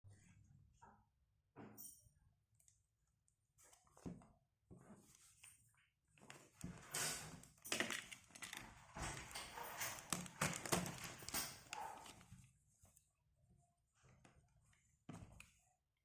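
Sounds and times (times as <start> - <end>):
packaging crinkling and rustling: 7.4 - 12.4.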